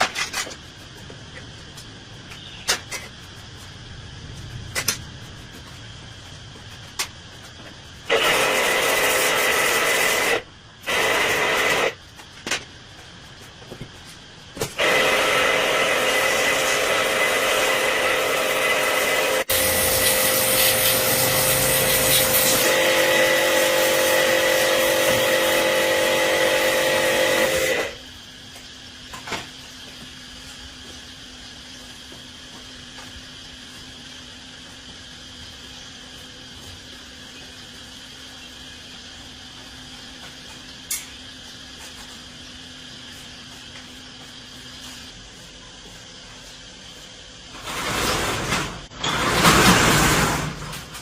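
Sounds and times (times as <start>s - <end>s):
electric power tool running: 8.1s - 12.0s, 14.8s - 28.0s.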